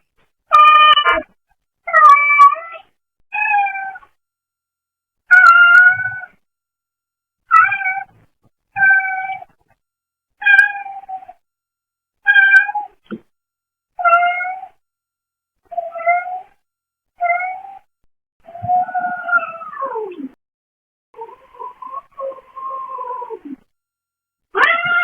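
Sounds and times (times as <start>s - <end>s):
cat meowing: 0.5s - 1.3s, 5.3s - 6.3s, 12.3s - 13.0s, 24.6s - 25.0s.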